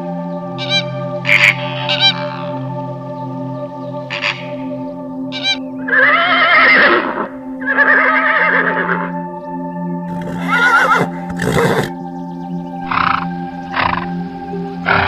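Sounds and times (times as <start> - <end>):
background music: 0.0 - 15.0
animal high-pitched cries: 10.1 - 11.9.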